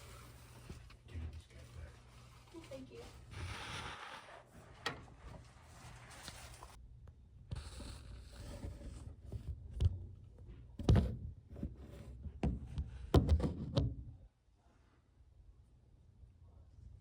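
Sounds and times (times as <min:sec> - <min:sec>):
rustling handling noise: 0:04.4 - 0:06.8
dull thumps and knocks: 0:10.8 - 0:14.1.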